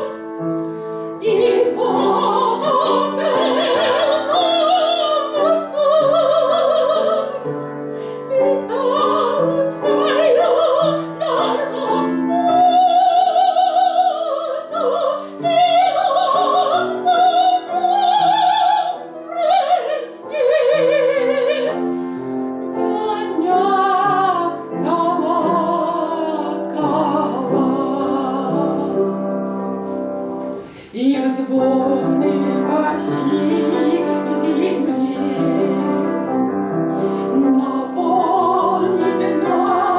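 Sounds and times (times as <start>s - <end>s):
piano accompaniment: 0.0s - 39.9s
woman singing operatically: 1.2s - 7.4s, 8.3s - 21.7s, 22.7s - 28.8s, 30.9s - 36.0s, 37.4s - 39.9s.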